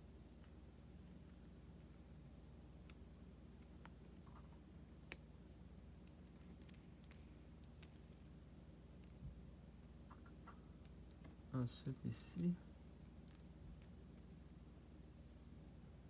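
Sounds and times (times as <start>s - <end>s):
low steady hum: 0.0s - 16.0s
small model car parts clicking: 6.0s - 8.3s, 13.2s - 13.9s.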